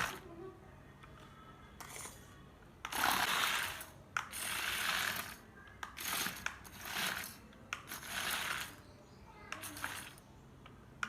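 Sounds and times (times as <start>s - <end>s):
toy gears clattering: 2.8s - 8.8s, 9.5s - 10.2s.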